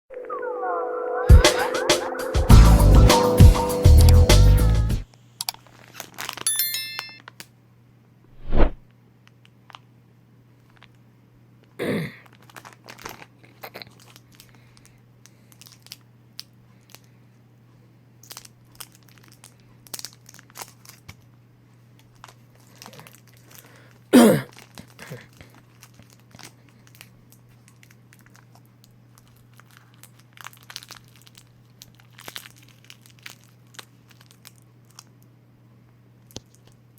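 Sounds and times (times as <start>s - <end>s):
candy wrapper crinkling and tearing: 5.6s - 6.5s, 12.2s - 17.1s, 18.2s - 21.3s, 22.0s - 23.9s, 24.5s - 35.3s, 36.2s - 36.9s.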